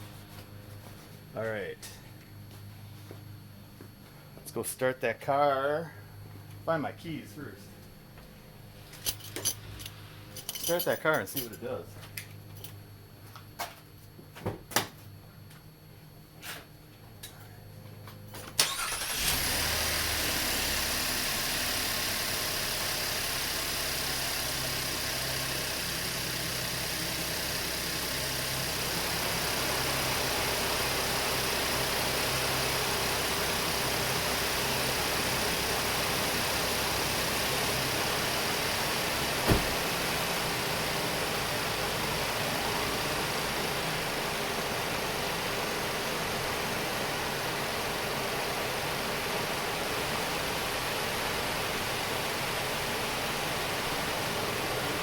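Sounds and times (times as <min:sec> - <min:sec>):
car engine starting and idling: 0:18.5 - 0:47.1.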